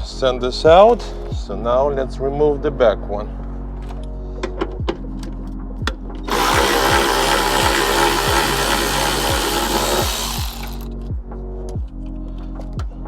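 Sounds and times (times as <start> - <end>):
background music with steady beat: 0.0 - 13.0
power tool running: 6.3 - 10.9.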